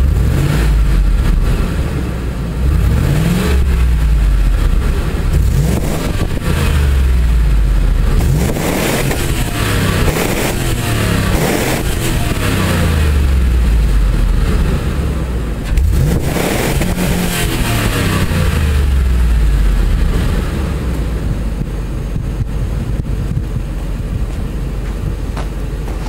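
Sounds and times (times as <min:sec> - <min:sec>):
engine revving and idling: 0:00.0 - 0:26.0.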